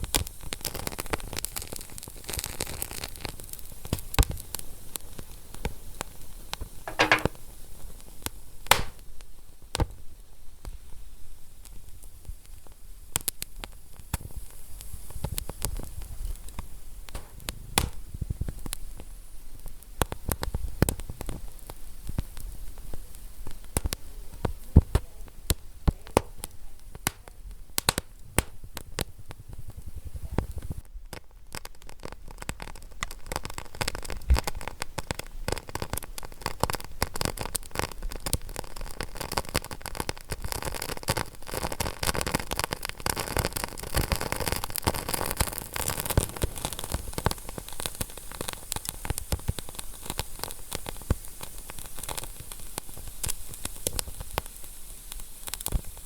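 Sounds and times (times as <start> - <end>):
wood fire crackling and popping: 0.0 - 11.0, 11.6 - 56.0
low rumble of flames: 11.9 - 38.6.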